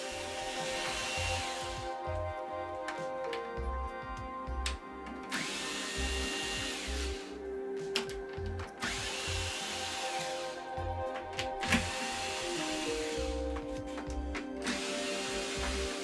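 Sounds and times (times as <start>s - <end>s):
power drill spinning: 0.0s - 2.2s, 5.2s - 7.4s, 8.6s - 16.0s.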